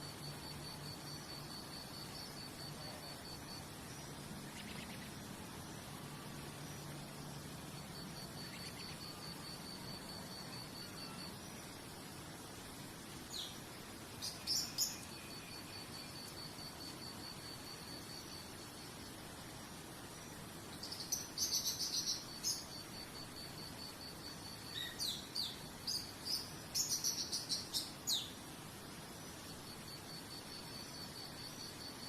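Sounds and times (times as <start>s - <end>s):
insect trilling: 0.0s - 12.1s, 13.2s - 18.9s
soft hiss: 0.0s - 32.0s.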